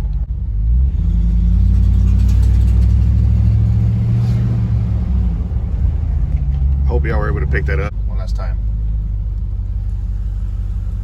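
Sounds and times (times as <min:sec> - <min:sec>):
pickup truck engine accelerating: 0:00.0 - 0:08.0.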